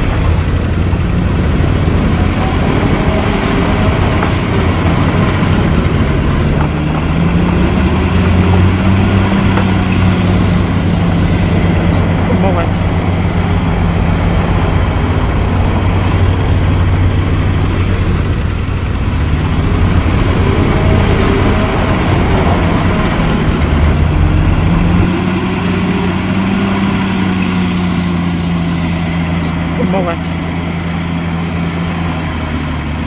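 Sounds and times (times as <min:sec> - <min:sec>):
diesel engine running under load: 0:00.0 - 0:33.0.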